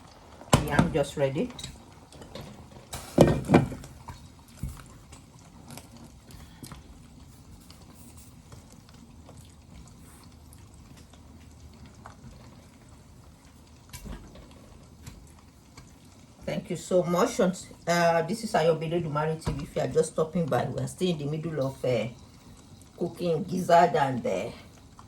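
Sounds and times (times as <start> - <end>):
frying hiss: 0.0 - 25.0
oil crackling and spitting: 1.5 - 16.6, 21.6 - 23.6.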